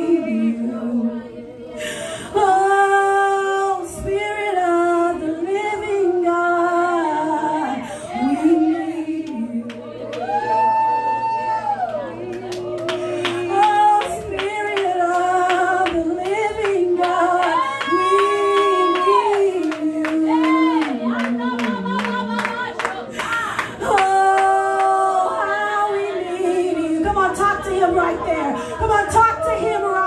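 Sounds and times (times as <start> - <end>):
people singing wordlessly: 0.0 - 30.0
rhythmic hand clapping: 11.8 - 25.2.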